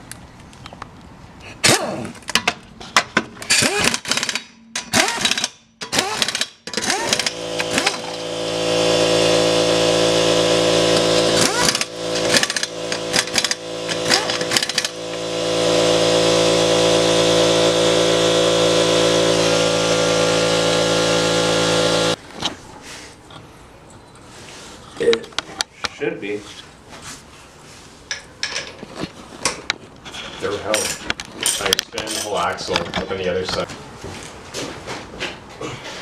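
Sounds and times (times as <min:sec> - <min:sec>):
power tool motor running: 0:03.5 - 0:22.2.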